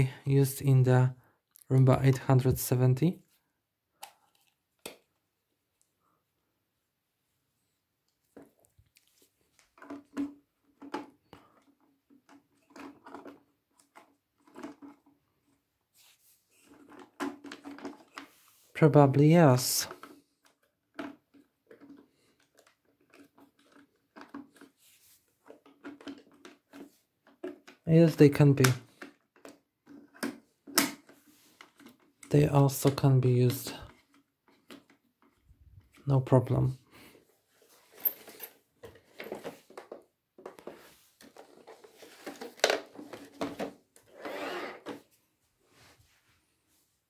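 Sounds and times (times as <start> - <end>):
faint plastic clicks and taps: 4.0 - 5.2
plastic parts clicking and rattling: 8.3 - 15.6, 16.5 - 18.4, 19.6 - 44.2.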